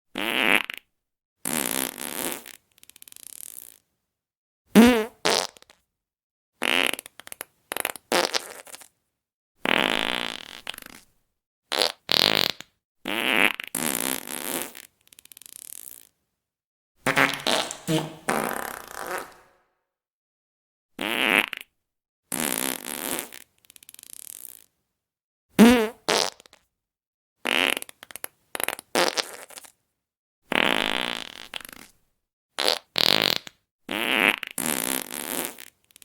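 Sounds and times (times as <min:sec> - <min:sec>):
fart sound effects: 0:17.1 - 0:19.6.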